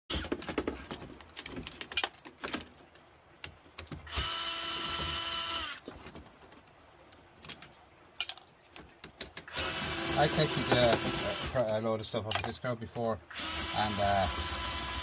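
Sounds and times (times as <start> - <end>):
parts clicking and knocking: 0.1 - 5.2, 7.4 - 12.7
power drill whining: 4.1 - 5.8, 9.5 - 11.6, 13.3 - 15.0.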